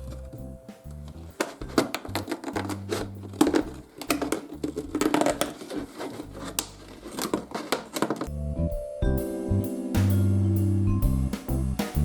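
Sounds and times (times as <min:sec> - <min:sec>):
plastic bottle crackling: 0:01.0 - 0:08.3.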